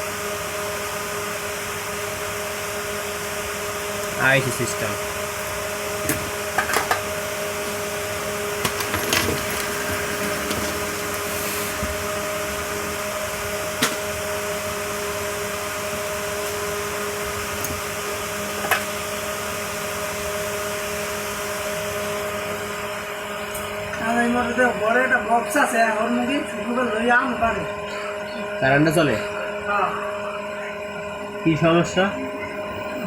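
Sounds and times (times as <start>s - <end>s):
small blower whirring: 1.8s - 24.0s.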